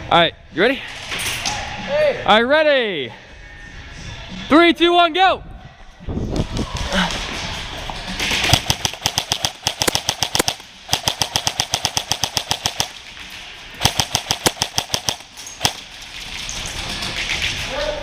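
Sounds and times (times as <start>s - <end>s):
airsoft rifle full-auto firing: 8.5s - 12.9s, 13.8s - 15.8s.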